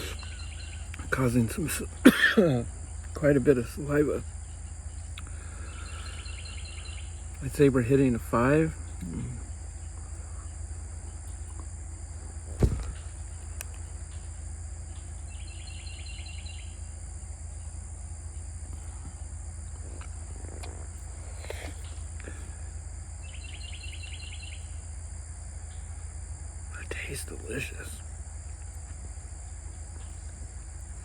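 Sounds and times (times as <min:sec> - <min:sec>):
rapid chirping trill: 0:00.0 - 0:19.7, 0:22.8 - 0:26.2
high-pitched insect drone: 0:00.0 - 0:31.0
sharp knock: 0:12.6 - 0:13.0.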